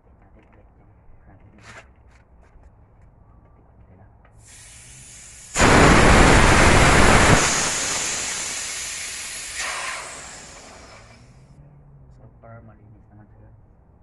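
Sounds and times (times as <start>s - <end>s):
compressed air hissing: 4.4s - 11.4s.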